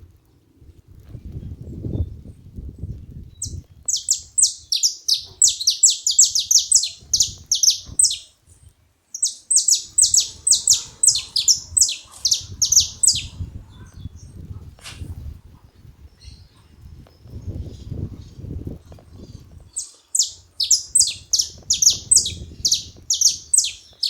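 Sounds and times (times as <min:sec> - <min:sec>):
finch calling sharp high notes: 0:03.9 - 0:08.3, 0:09.2 - 0:13.3, 0:19.8 - 0:24.0.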